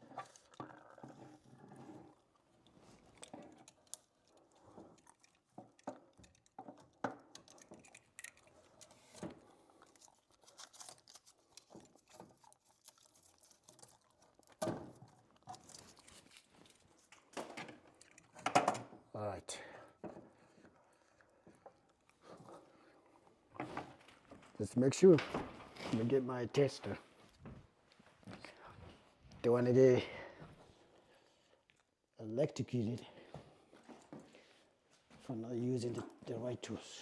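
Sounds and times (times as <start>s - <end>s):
clicks and crinkling of cable: 2.6s - 19.0s
rustling: 7.8s - 17.4s.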